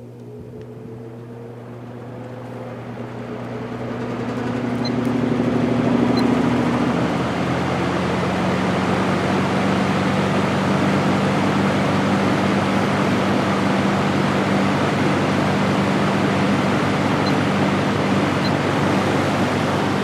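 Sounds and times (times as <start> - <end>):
fan air rushing: 0.0 - 20.0
low motor hum: 0.0 - 20.0.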